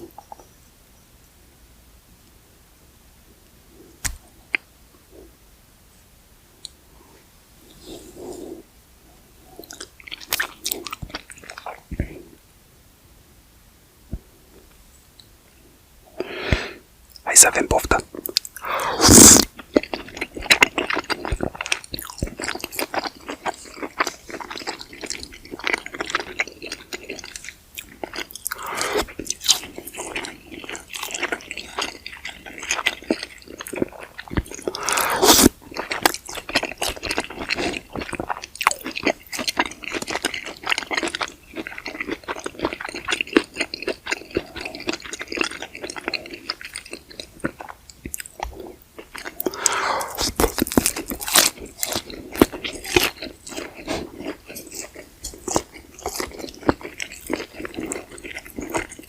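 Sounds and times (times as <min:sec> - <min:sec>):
chewing and wet mouth noises: 0:09.6 - 0:12.2, 0:16.2 - 0:59.0.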